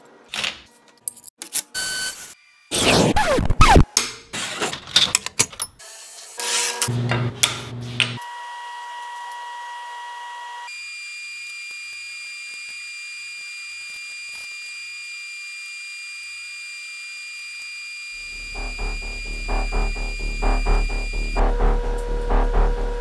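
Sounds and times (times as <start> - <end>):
high-pitched electronic tone: 18.2 - 23.0.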